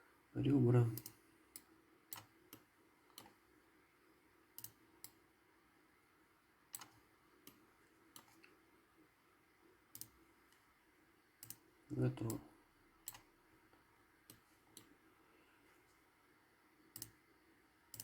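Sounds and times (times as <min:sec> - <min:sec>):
computer mouse clicks: 0:00.9 - 0:03.4, 0:04.6 - 0:05.2, 0:06.7 - 0:08.6, 0:09.9 - 0:10.6, 0:11.4 - 0:11.6, 0:13.0 - 0:13.3, 0:14.2 - 0:14.9, 0:16.9 - 0:17.2.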